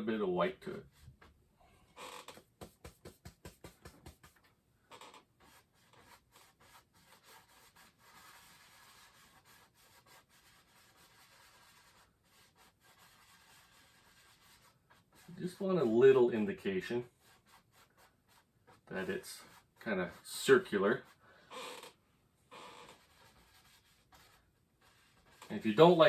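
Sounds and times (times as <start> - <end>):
paintbrush rubbing on canvas: 2.5 - 4.4, 5.4 - 16.0, 16.8 - 21.2, 22.7 - 26.0.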